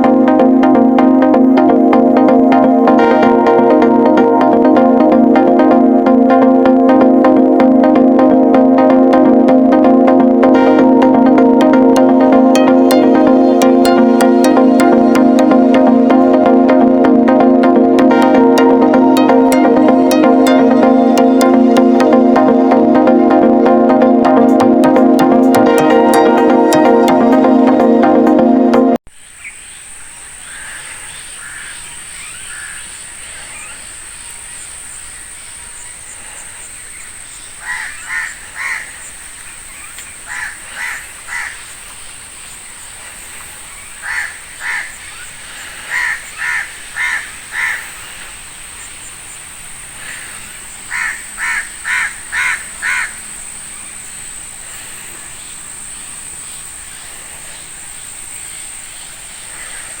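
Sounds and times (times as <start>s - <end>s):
crow cawing: 37.6s - 39.0s, 40.3s - 41.6s, 44.0s - 45.0s, 45.9s - 48.0s, 50.0s - 53.2s.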